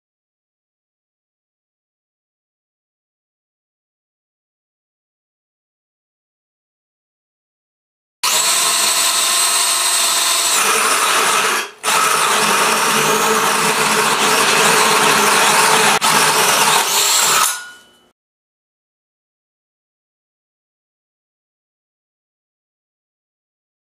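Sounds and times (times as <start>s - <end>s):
drill hole cutter whining: 8.2s - 17.9s.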